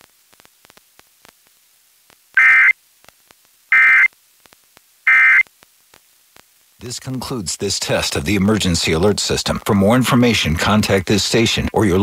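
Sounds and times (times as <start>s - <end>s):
digital data tone bursts: 2.4s - 2.8s, 3.7s - 4.1s, 5.1s - 5.4s.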